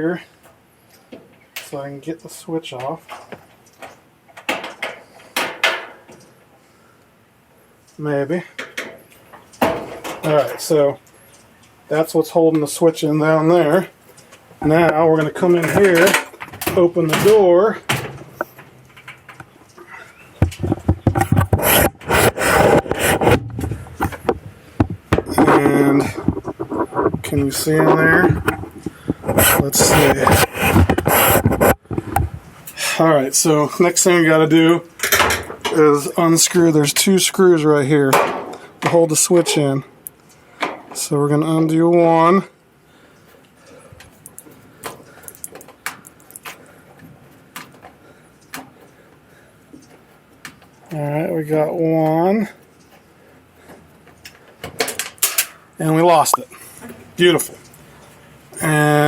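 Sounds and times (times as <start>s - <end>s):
rubbing and scraping handling noises: 12.6s - 34.8s.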